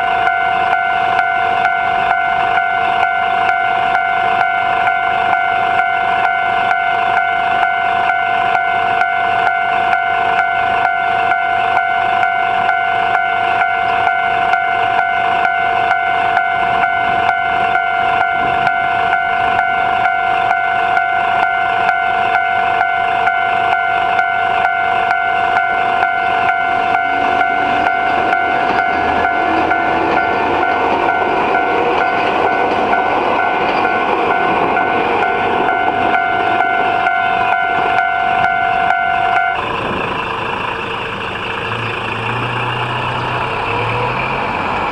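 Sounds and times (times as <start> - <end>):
level-crossing alarm bell: 0.0 - 42.2
train approaching on rails: 0.0 - 44.9.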